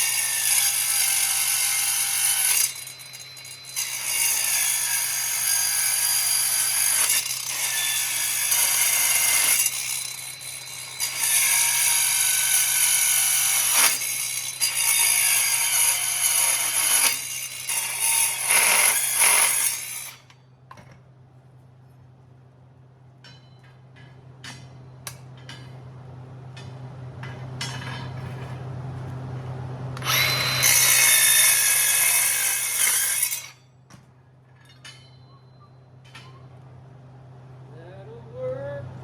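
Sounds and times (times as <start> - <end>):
power tool cutting metal: 0.0 - 20.3, 30.0 - 33.6.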